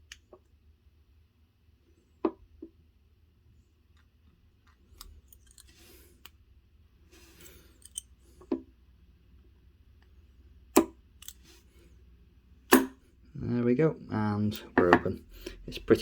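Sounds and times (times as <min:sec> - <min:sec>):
lock pick scratching: 0:04.8 - 0:06.4, 0:07.2 - 0:08.2, 0:10.8 - 0:11.6.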